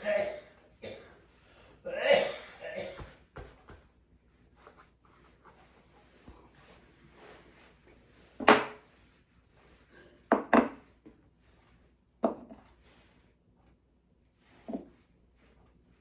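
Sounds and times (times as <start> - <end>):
kitchen things knocking on counter: 2.9 - 3.8.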